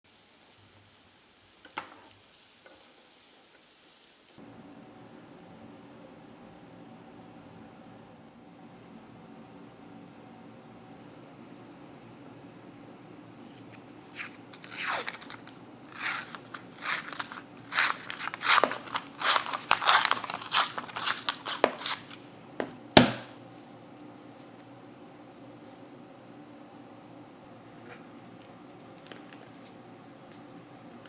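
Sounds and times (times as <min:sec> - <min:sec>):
paper wrapper tearing: 0:13.4 - 0:22.2, 0:28.4 - 0:30.4
cardboard tube popping open: 0:13.5 - 0:22.2, 0:23.0 - 0:23.3.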